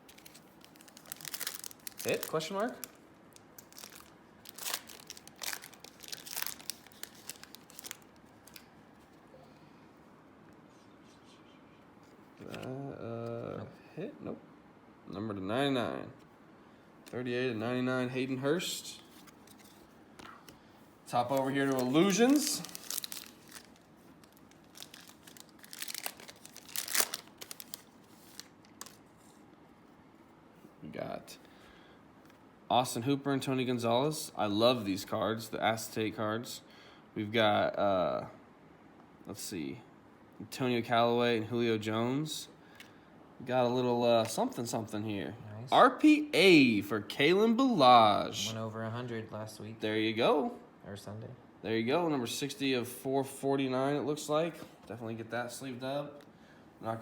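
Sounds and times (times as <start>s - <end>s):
foil wrapper crinkling: 0.0s - 8.7s, 21.1s - 29.1s.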